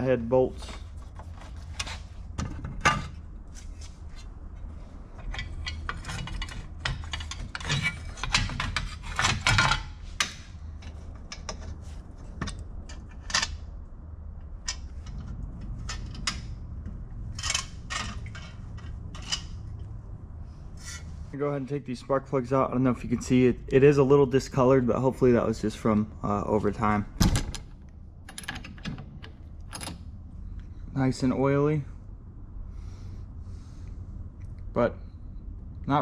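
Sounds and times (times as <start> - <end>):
hand tools clicking and scraping metal: 5.2 - 13.6, 17.3 - 19.9.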